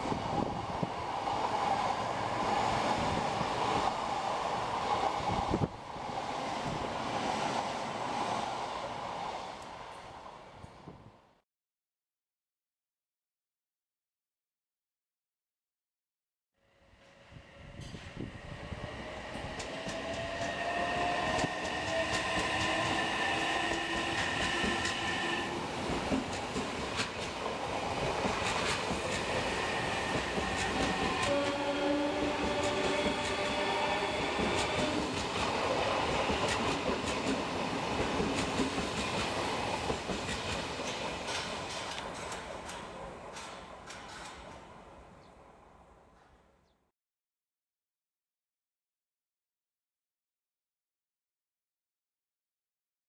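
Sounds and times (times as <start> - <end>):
train running past: 0.0 - 10.9, 16.7 - 46.4
wheels clicking over rail joints: 25.8 - 31.6, 34.1 - 44.8.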